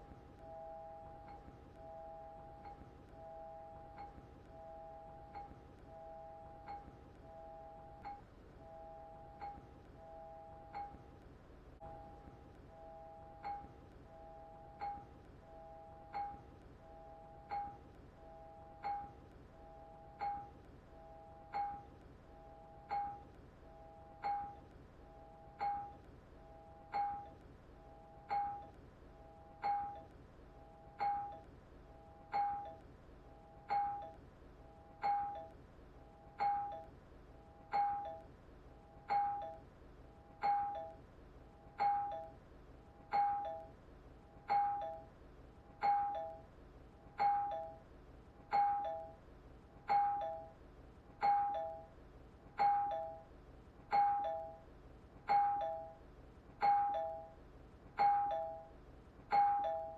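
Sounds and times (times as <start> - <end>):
doorbell ding-dong chime: 12.8 - 16.4, 17.0 - 19.2, 19.8 - 21.9, 22.5 - 23.2, 23.8 - 24.6, 25.3 - 26.0, 26.7 - 27.4, 28.0 - 28.7, 29.4 - 30.1, 30.9 - 31.5, 32.2 - 32.8, 33.6 - 34.2, 35.0 - 35.5, 36.3 - 36.9, 37.7 - 38.3, 39.1 - 39.6, 40.4 - 41.0, 41.8 - 42.4, 43.1 - 43.8, 44.5 - 45.1, 45.8 - 46.5, 47.2 - 47.9, 48.5 - 49.2, 49.9 - 50.6, 51.2 - 52.0, 52.6 - 53.3, 53.9 - 54.7, 55.3 - 56.0, 56.6 - 57.4, 58.0 - 59.9.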